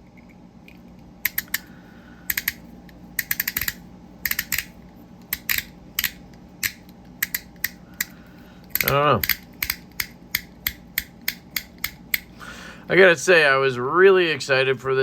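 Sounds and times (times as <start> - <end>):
fidget toy ring clicking: 2.3 - 2.6, 3.2 - 4.7, 5.3 - 8.1.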